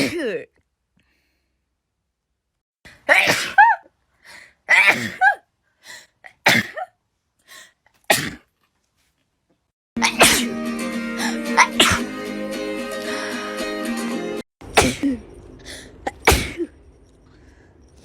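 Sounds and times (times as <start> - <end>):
person sneezing: 10.0 - 10.6, 11.2 - 12.1, 14.7 - 15.2, 16.1 - 16.7
music: 10.0 - 14.5.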